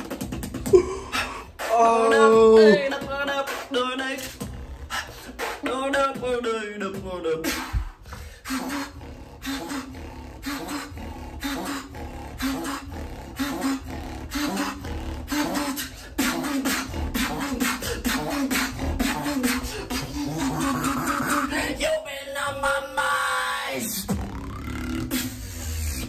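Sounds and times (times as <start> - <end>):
beatbox snare and hi-hat sounds: 0.0 - 21.7, 23.8 - 26.0
falling vocal sweep: 0.7 - 4.3, 8.5 - 22.3
hummed bass line: 8.5 - 21.5, 24.1 - 26.0.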